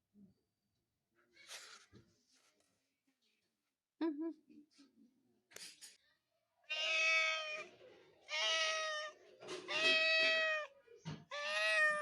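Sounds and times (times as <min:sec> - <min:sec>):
cat meowing: 0:06.7 - 0:07.7, 0:08.3 - 0:12.0.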